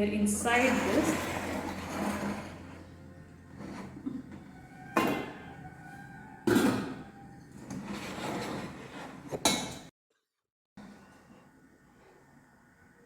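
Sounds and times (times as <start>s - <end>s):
metal pans clanking: 3.5s - 5.6s, 6.4s - 9.9s.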